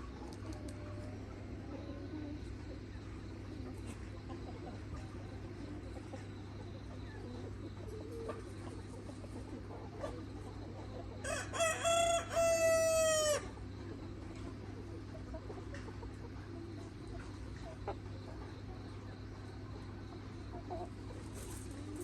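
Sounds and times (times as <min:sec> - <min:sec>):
rooster crowing: 0:11.2 - 0:13.5.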